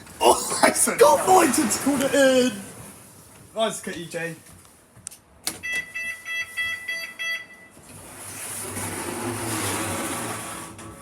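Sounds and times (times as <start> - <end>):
lift beeper short high beeps: 5.6 - 7.8.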